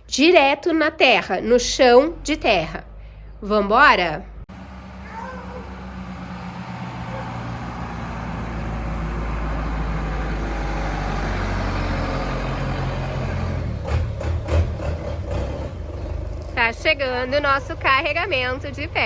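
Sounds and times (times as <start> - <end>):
vehicle engine running: 4.5 - 19.0.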